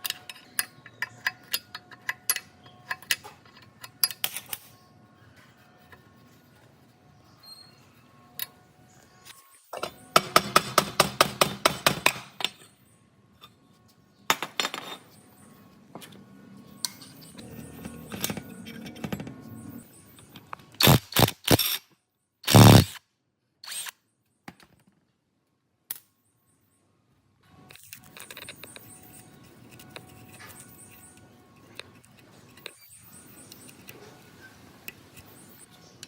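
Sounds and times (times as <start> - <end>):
knocks and scraping: 13.4 - 21.0
loud bursts of tool noise: 20.8 - 21.8, 22.4 - 23.0.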